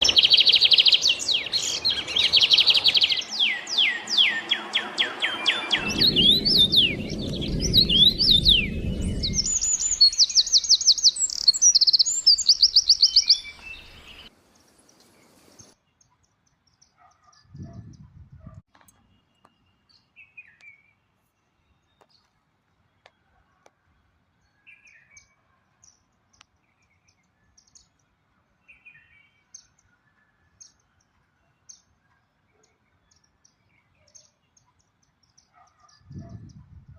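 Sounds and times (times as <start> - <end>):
songbirds chirping and singing: 0.0 - 18.1
low rumble: 5.5 - 10.3.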